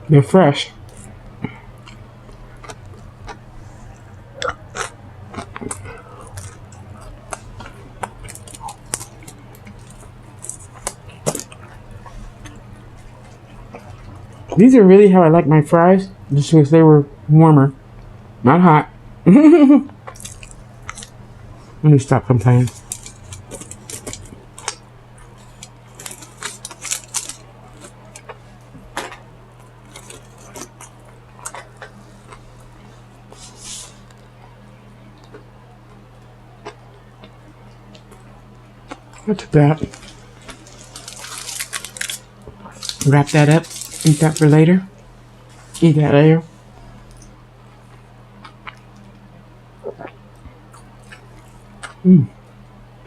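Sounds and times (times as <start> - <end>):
low hum: 0.0 - 53.0
person chewing crunchy food: 0.9 - 14.6, 19.9 - 21.8, 22.4 - 34.4, 36.6 - 45.9, 46.7 - 52.0.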